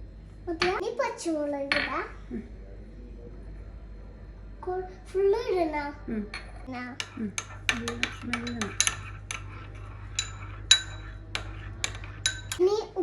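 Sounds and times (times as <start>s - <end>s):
utensil clinking against dish: 6.4s - 12.6s.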